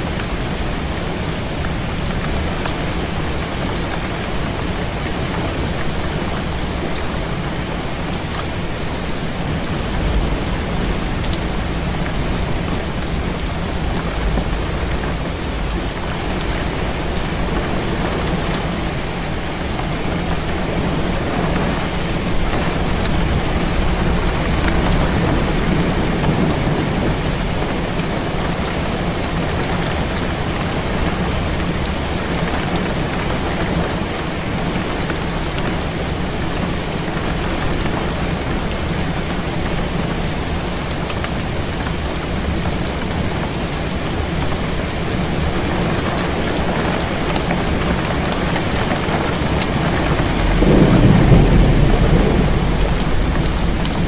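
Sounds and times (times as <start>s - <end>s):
heavy rain on a window: 0.0s - 54.0s
thunder rumble: 5.2s - 30.1s, 48.4s - 54.0s.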